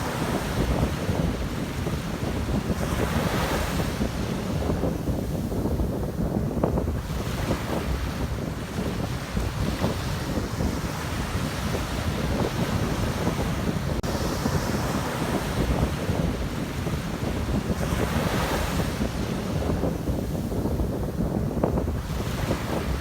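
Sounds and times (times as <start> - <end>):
sea waves washing in: 0.0 - 23.0
wind buffeting microphone: 0.0 - 23.0.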